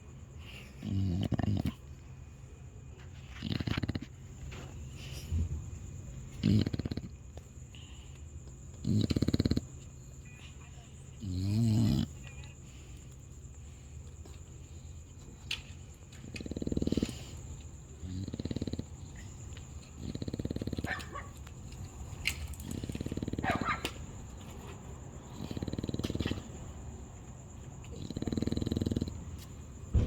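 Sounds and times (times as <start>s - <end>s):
dog snoring: 0.6s - 2.0s, 3.2s - 5.7s, 6.3s - 7.2s, 8.7s - 9.9s, 11.2s - 12.3s, 16.2s - 21.3s, 22.5s - 23.7s, 25.2s - 26.5s, 27.8s - 29.4s.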